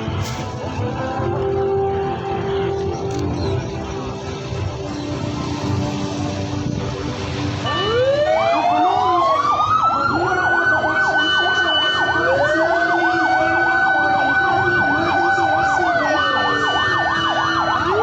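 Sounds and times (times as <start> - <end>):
emergency sirens wailing: 0.0 - 18.0
siren yelp: 7.6 - 18.0.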